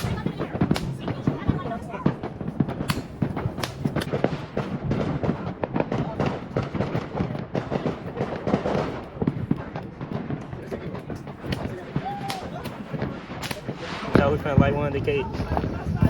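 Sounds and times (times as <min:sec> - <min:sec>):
fireworks crackling and popping: 0:00.0 - 0:16.0
loud firework bangs: 0:00.0 - 0:16.0.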